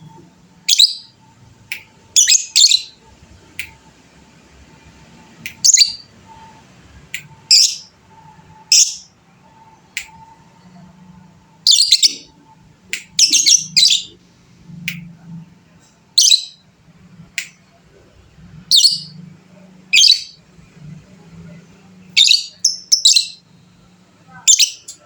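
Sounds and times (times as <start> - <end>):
bird shrill high-pitched calls: 0.7 - 1.1, 2.2 - 3.0, 5.6 - 6.1, 7.5 - 7.9, 8.7 - 9.1, 11.7 - 12.3, 13.2 - 14.2, 16.2 - 16.6, 18.7 - 19.2, 20.0 - 20.4, 22.2 - 23.4.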